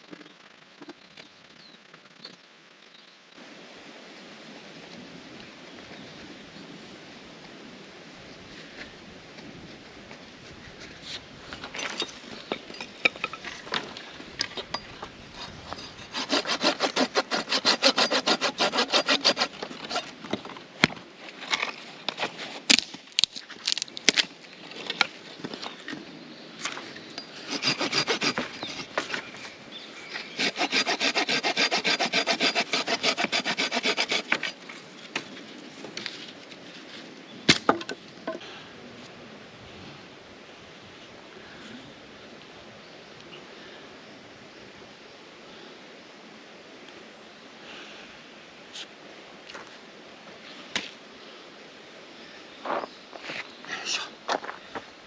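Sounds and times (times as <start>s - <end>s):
knocks and handling sounds: 11.5s - 16.1s
hand saw cutting wood: 15.4s - 20.2s, 27.3s - 29.2s, 30.2s - 34.6s.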